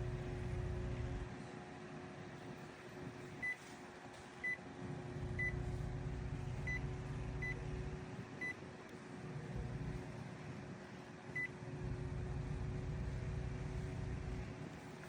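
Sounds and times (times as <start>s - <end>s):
portable fan humming: 0.0s - 15.0s.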